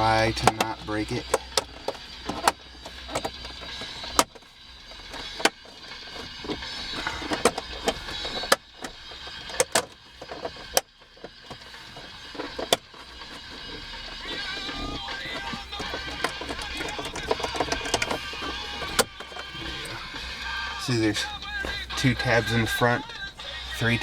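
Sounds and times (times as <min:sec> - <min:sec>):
plastic rubbing and creaking: 0:00.0 - 0:24.0
plastic clips snapping loose: 0:06.4 - 0:11.7, 0:14.3 - 0:19.9.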